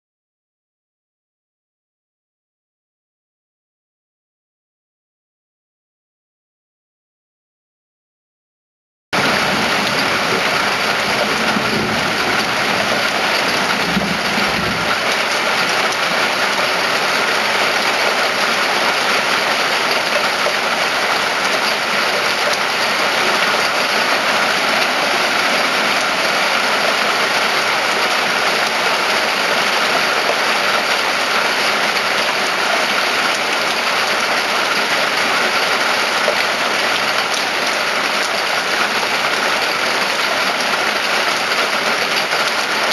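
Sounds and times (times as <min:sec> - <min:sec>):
steady rain falling: 0:09.2 - 0:42.9.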